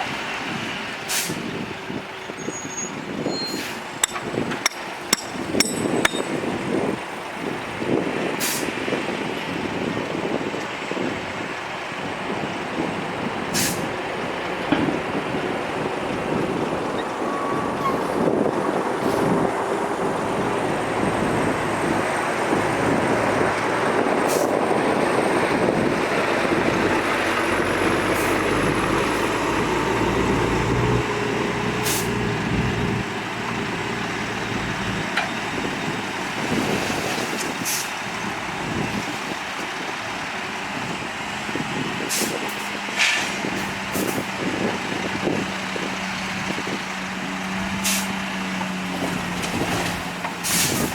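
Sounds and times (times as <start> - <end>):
heavy diesel machinery running: 0.0 - 36.8, 37.4 - 50.9
sharp knocks: 4.0 - 6.4.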